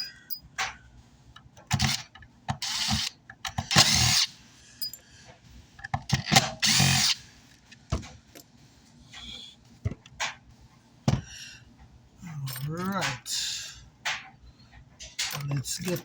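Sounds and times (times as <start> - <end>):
power drill driving out screws: 1.7 - 2.0, 2.6 - 4.3, 6.1 - 7.2.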